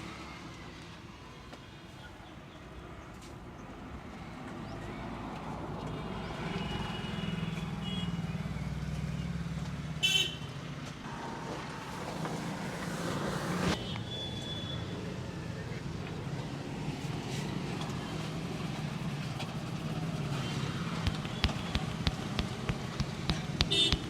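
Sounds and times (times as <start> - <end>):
vehicle engine hum: 7.8 - 13.8, 14.9 - 24.0.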